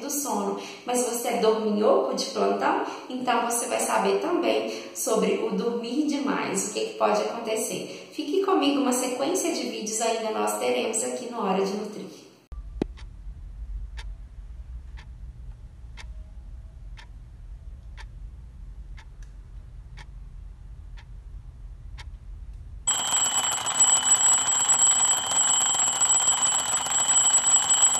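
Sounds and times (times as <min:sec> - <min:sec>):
low hum: 0:12.5 - 0:27.9
clock ticking: 0:12.8 - 0:13.1, 0:14.9 - 0:15.1, 0:17.9 - 0:18.1
alarm clock ringing: 0:22.9 - 0:27.9.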